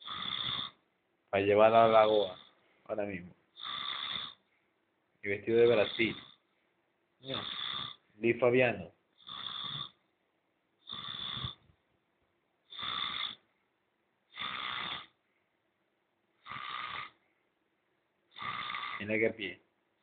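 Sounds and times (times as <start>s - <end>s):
man snoring: 0.0s - 0.8s, 1.7s - 2.5s, 3.6s - 4.4s, 5.5s - 6.4s, 7.2s - 8.0s, 9.2s - 10.0s, 10.8s - 11.6s, 12.7s - 13.4s, 14.3s - 15.2s, 16.4s - 17.2s, 18.3s - 19.3s.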